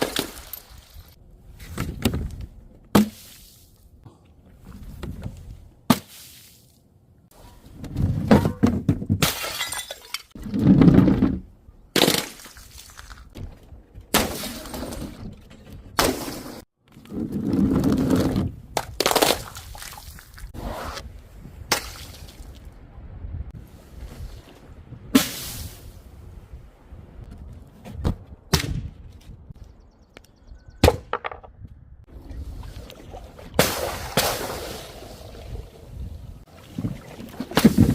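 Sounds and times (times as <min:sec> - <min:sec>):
glass bottles smashing: 0:09.2 - 0:10.4.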